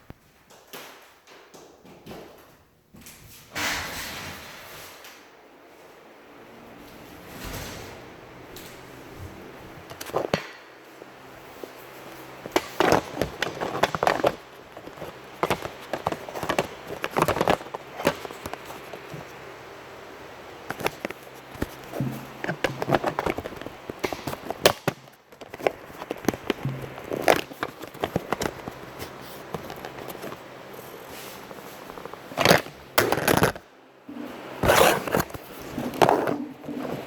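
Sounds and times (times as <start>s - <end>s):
clicks and crackles: 9.8s - 11.1s, 12.0s - 19.5s, 20.4s - 30.5s, 31.4s - 33.7s.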